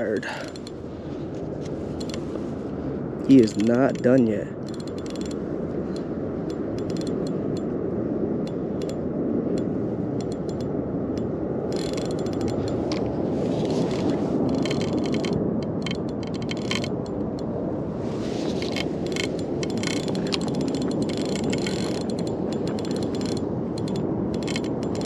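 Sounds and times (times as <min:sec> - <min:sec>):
reel drag clicking: 0:03.3 - 0:07.6, 0:11.7 - 0:13.0, 0:13.7 - 0:17.2, 0:18.5 - 0:25.0
fishing reel gear whirr: 0:04.7 - 0:05.4, 0:06.8 - 0:07.1, 0:11.7 - 0:12.6, 0:14.0 - 0:16.9, 0:18.6 - 0:25.0.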